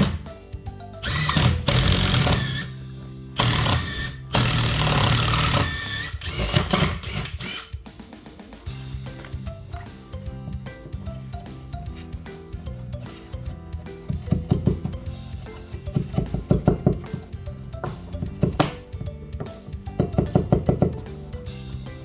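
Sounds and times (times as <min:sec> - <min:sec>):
power tool running: 0:00.0 - 0:00.2, 0:01.0 - 0:07.8
music with steady beat: 0:00.0 - 0:22.0.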